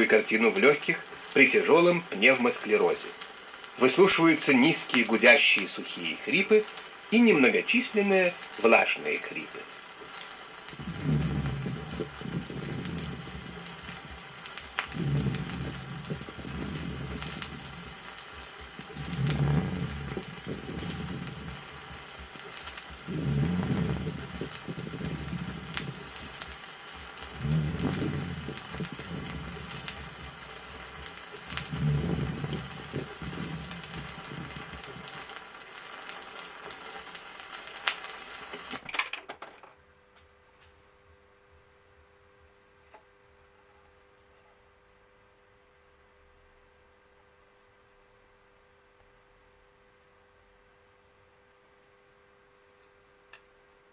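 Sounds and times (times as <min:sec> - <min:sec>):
vinyl record hiss: 0:00.0 - 0:38.9
humming dry lung rales: 0:09.6 - 0:38.7
moist lung rales: 0:09.8 - 0:38.0.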